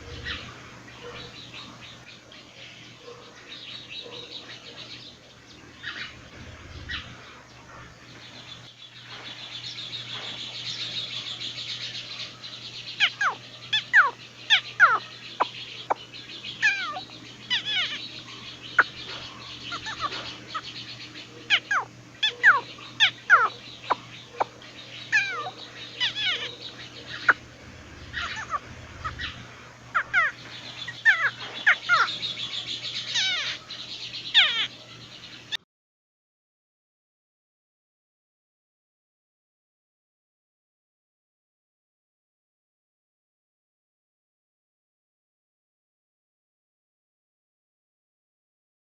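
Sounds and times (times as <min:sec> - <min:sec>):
high chirring bird chorus: 0:00.0 - 0:35.6.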